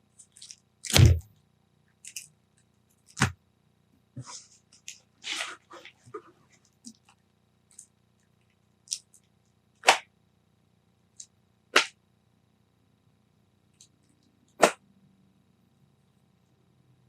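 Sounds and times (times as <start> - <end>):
comic books slapping on pile: 0.8 - 1.3, 3.1 - 3.4, 11.8 - 12.0, 14.6 - 14.8.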